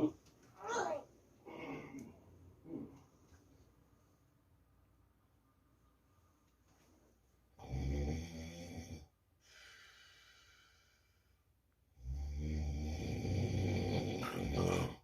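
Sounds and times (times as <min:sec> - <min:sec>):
man snoring: 0:07.6 - 0:09.1, 0:12.0 - 0:15.0.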